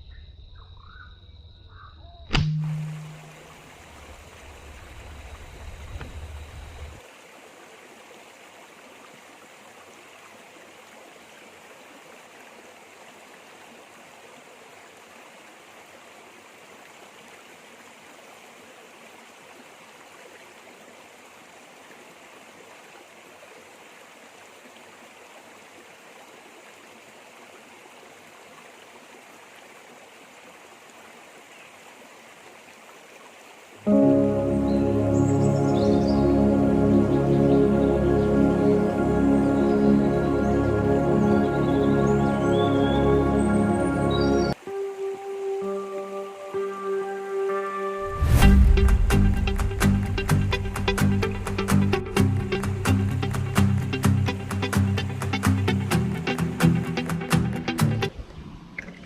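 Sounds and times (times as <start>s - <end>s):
river rushing: 2.6s - 37.2s, 37.8s - 58.7s
low rumble: 48.1s - 52.0s.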